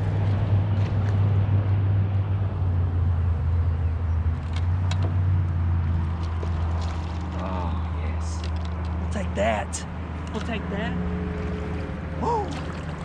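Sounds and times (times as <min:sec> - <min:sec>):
low motor hum: 0:00.0 - 0:09.2, 0:09.9 - 0:13.0.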